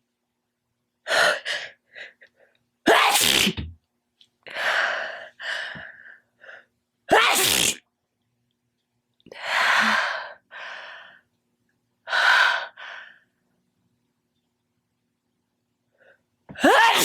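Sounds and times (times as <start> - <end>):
person sneezing: 2.9 - 3.7, 7.1 - 7.8, 16.6 - 17.0.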